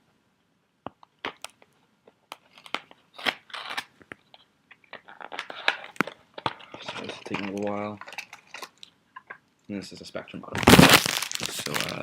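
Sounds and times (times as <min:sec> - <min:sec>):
wrapper crackling and crinkling: 0:02.3 - 0:08.9, 0:10.6 - 0:12.0.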